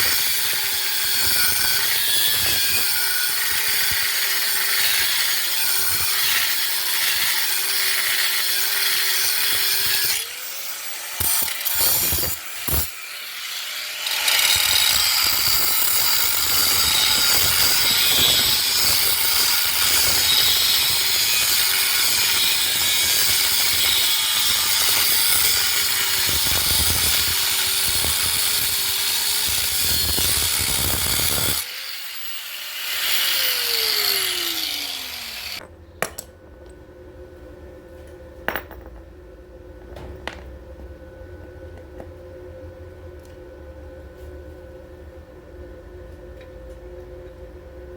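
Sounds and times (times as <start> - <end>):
power tool cutting: 0.0 - 35.6
motor winding down whine: 33.2 - 35.6.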